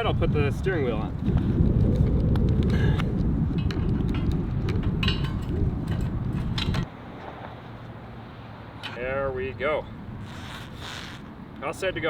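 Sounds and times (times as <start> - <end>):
wind rumble on microphone: 0.0 - 6.9.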